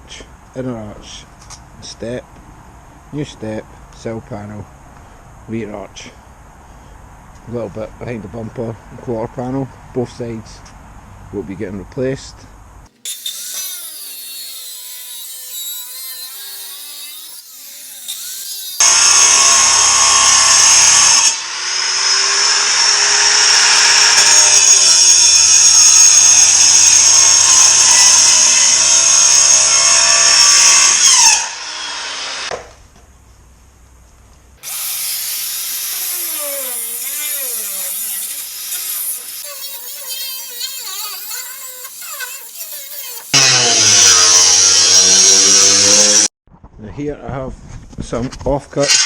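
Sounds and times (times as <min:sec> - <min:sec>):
power tool whining on sheet metal: 0:12.9 - 0:32.5, 0:34.6 - 0:46.3.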